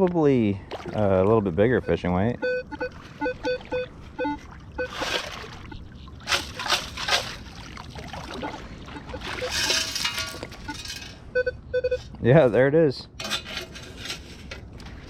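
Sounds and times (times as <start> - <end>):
metal detector short beeps: 1.8 - 5.0, 8.4 - 12.1.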